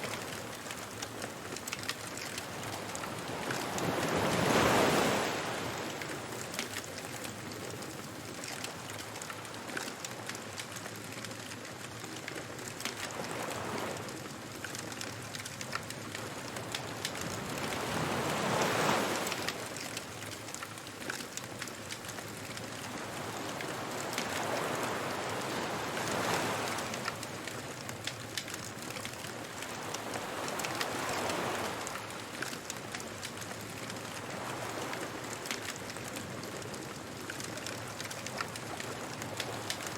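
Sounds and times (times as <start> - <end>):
waves washing in: 0.0 - 7.5, 16.0 - 39.9
fire crackling: 0.0 - 39.9.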